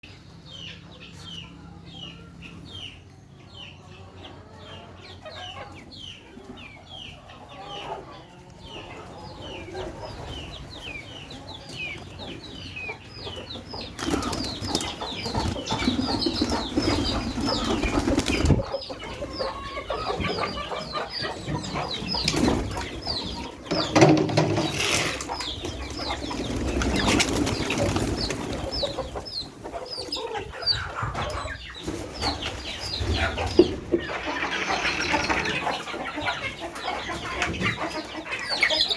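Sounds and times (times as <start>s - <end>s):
chickens peeping: 0.0s - 38.9s
rustling and wing-flapping: 14.0s - 18.7s, 23.6s - 29.0s.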